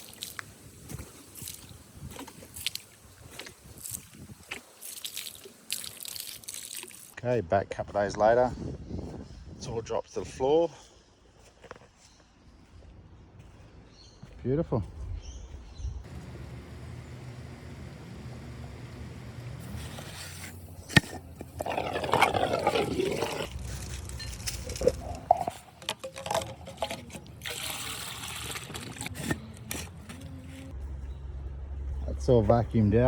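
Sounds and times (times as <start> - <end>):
water gurgling and sloshing: 16.1 - 23.6, 24.6 - 30.7.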